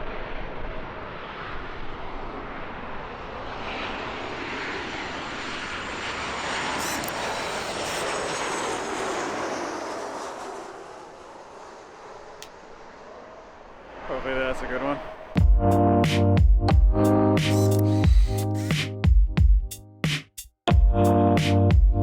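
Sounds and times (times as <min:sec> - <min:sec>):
airliner flying over: 0:00.0 - 0:16.0.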